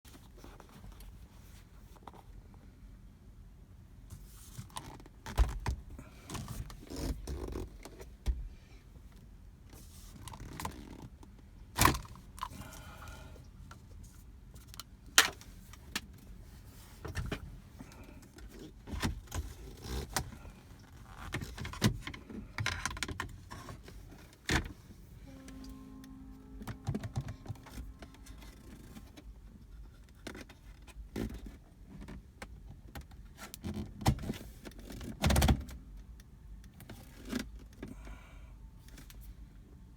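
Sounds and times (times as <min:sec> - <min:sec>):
plastic rattles of gear shifter: 0:04.4 - 0:08.5, 0:09.1 - 0:24.9, 0:28.2 - 0:35.8
steady hum: 0:24.9 - 0:29.6.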